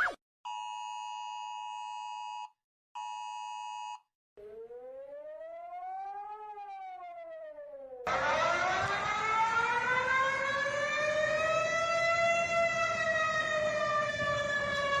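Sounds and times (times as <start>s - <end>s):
warning siren wailing: 4.4s - 15.0s.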